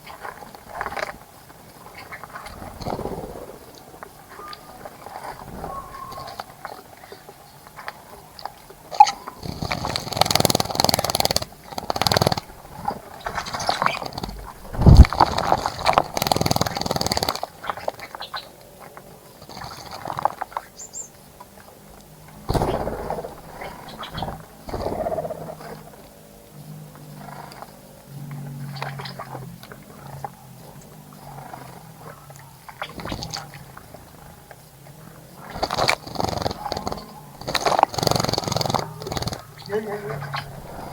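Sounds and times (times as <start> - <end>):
bird wings fluttering and splashing: 0.3 - 6.8, 11.8 - 18.3, 22.5 - 24.6.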